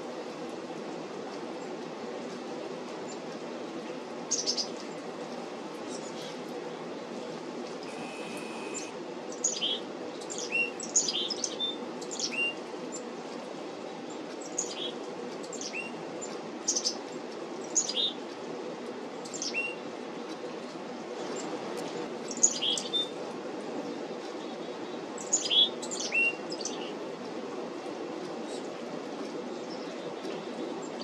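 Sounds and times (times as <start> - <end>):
steady low background hum: 0.0 - 31.0
chickadees calling: 7.8 - 9.8.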